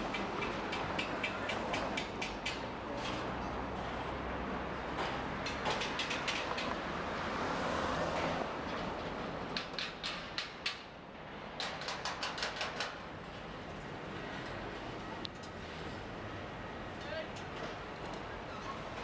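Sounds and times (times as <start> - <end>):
steady city rumble: 0.0 - 19.0
rapid sharp metallic clacks: 11.6 - 13.0.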